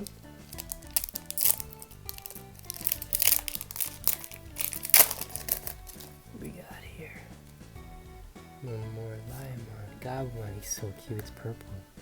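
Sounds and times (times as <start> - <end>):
card pack wrapper crinkling: 0.0 - 6.2
background music: 0.0 - 12.0.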